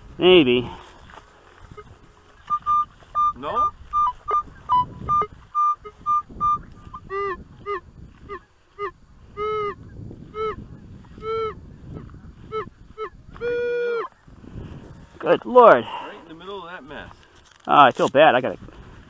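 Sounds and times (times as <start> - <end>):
metal detector beeps: 1.7 - 7.8, 8.8 - 10.6, 11.2 - 11.6, 12.5 - 14.1
geese honking: 1.7 - 9.8.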